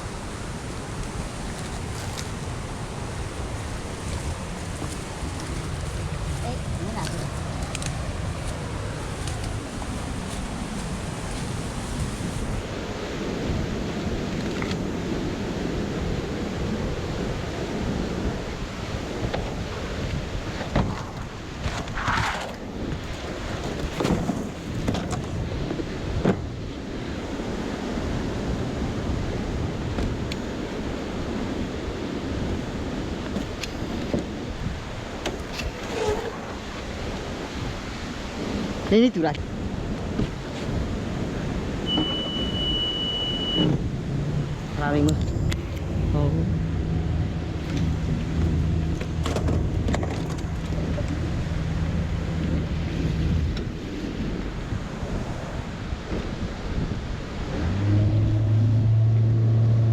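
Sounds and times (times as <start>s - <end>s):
wind buffeting microphone: 0.0s - 59.9s
engine running: 43.6s - 53.8s, 57.4s - 59.9s.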